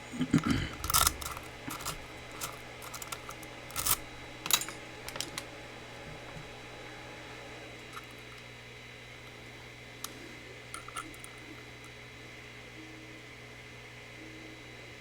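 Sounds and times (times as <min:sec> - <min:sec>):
metallic clicks of lock handling: 0:00.7 - 0:05.5, 0:10.0 - 0:11.4.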